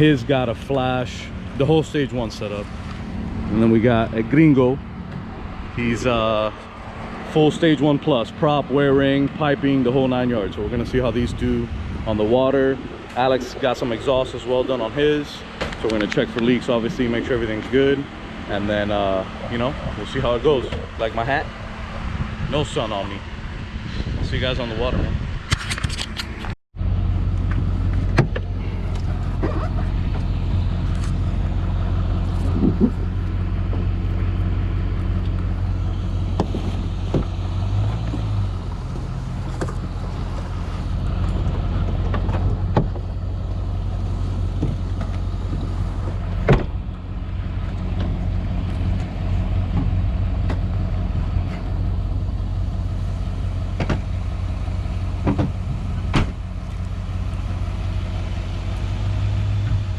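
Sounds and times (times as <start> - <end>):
engine humming: 0.0 - 59.9.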